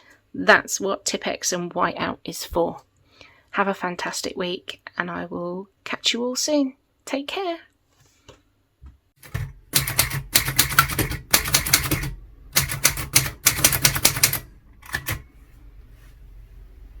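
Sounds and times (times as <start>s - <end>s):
manual typewriter keystrokes: 9.2s - 15.3s.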